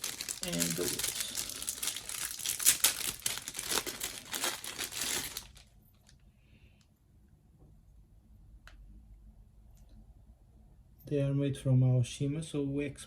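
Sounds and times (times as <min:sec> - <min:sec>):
packaging crackling: 0:00.0 - 0:06.2.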